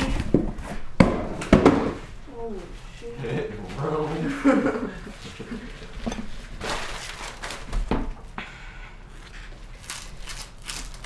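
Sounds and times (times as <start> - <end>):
packaging rustling: 6.3 - 7.9, 9.8 - 11.0.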